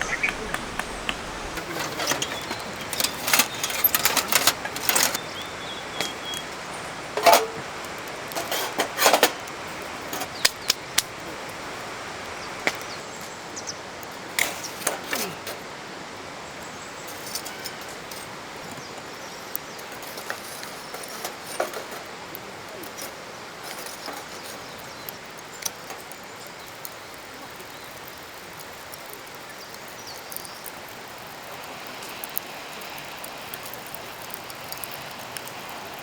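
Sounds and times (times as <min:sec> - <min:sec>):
hard objects clinking and knocking: 0:00.0 - 0:05.2, 0:14.4 - 0:15.6, 0:17.1 - 0:18.8, 0:19.5 - 0:25.0
steady background hiss: 0:00.0 - 0:36.0.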